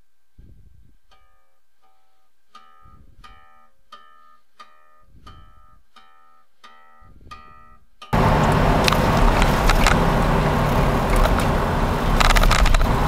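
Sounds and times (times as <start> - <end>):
guitar strumming a chord: 8.2 - 13.0
low rumbles: 8.2 - 13.0.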